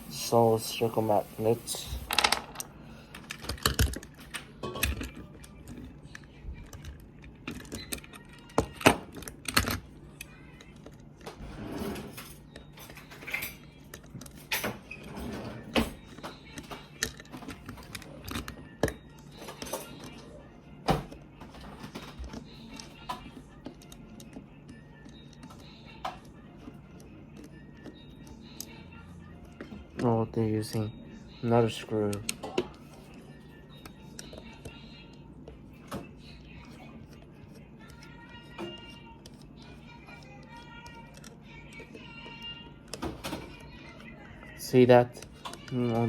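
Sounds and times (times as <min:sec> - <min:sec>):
plastic parts clicking and rattling: 0:02.0 - 0:11.0, 0:12.2 - 0:20.2, 0:33.8 - 0:46.0.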